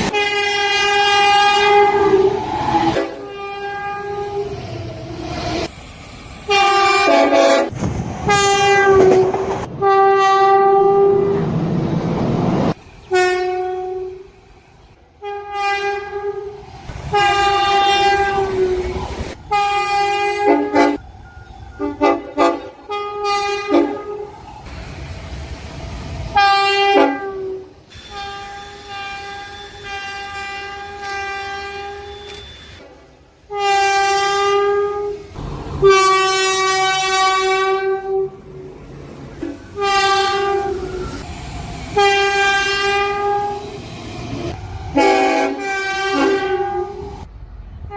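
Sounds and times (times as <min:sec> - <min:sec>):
train horn blasts: 0:00.0 - 0:04.6, 0:06.5 - 0:07.7, 0:08.3 - 0:11.4, 0:12.8 - 0:14.3, 0:15.2 - 0:21.0, 0:21.7 - 0:24.4, 0:26.4 - 0:38.5, 0:39.4 - 0:41.2, 0:42.0 - 0:43.8, 0:44.5 - 0:47.3.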